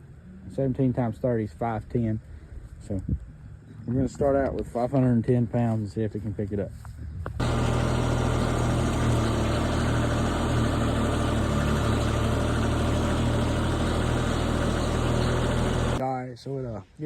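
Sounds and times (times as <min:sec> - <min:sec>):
diesel engine running: 0:07.4 - 0:16.0.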